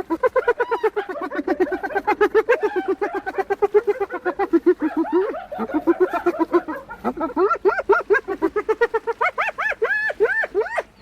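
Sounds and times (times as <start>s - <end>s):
hyena giggling yelps: 0.0s - 11.0s.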